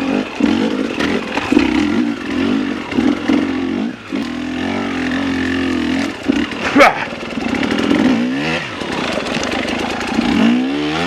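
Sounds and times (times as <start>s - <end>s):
dirt bike engine revving: 0.0s - 11.0s.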